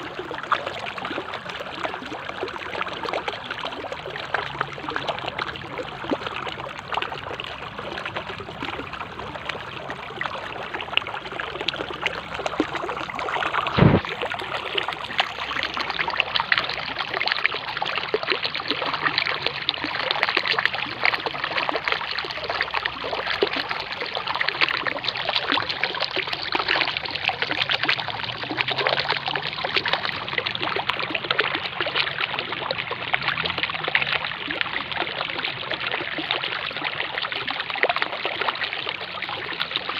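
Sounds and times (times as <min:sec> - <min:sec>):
stream flowing over stones: 0:00.0 - 0:39.9
thump: 0:13.7 - 0:14.3.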